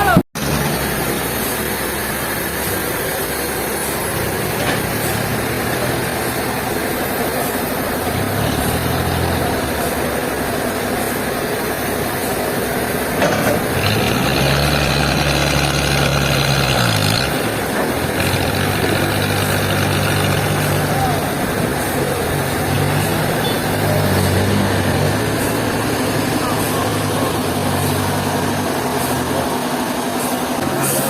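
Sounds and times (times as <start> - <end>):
heavy engine humming: 0.0 - 31.0.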